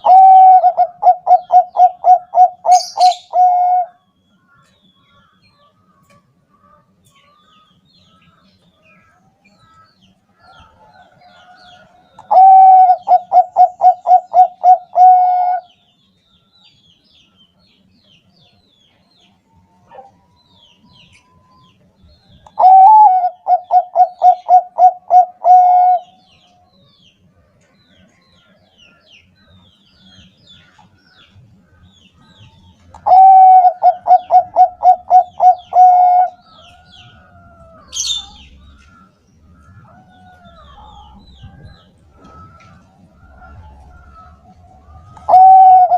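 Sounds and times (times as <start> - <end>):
dove cooing: 0.0 - 4.0, 10.4 - 15.8, 22.4 - 26.4, 32.2 - 45.9.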